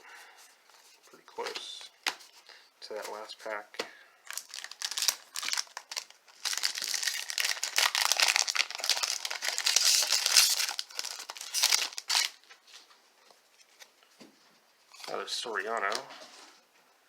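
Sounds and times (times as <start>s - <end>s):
wrapper crinkling and tearing: 4.3s - 12.5s.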